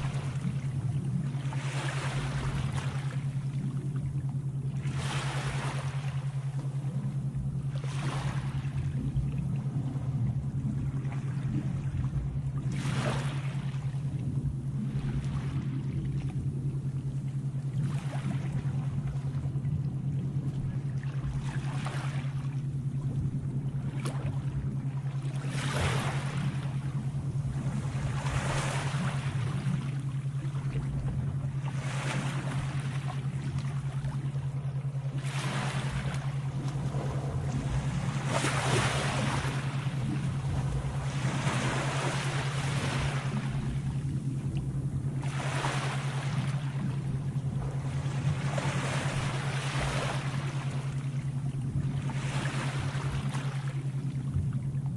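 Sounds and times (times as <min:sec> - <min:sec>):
sea waves washing in: 0:00.0 - 0:54.9
steady low hum: 0:00.0 - 0:54.9.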